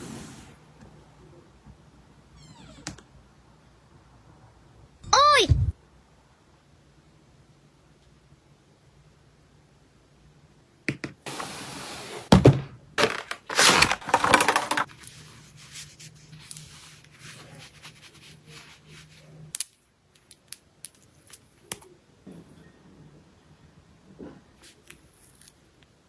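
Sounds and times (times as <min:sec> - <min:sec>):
packaging ripping and crinkling: 0:13.0 - 0:14.9
packaging rustling: 0:13.0 - 0:15.2.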